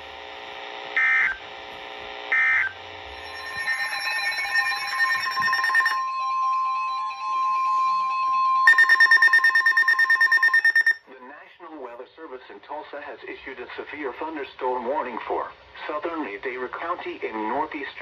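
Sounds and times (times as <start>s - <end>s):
screeching data bursts: 2.3s - 11.0s
steady single-pitch alert tone: 2.3s - 11.0s
rapidly pulsing warbling tone: 2.6s - 9.5s.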